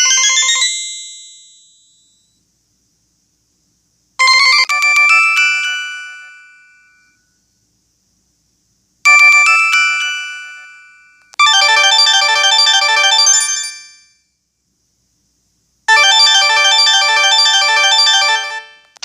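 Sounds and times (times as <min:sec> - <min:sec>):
mobile phone ringtone melody: 0:04.2 - 0:07.2, 0:09.1 - 0:14.2, 0:15.9 - 0:18.9.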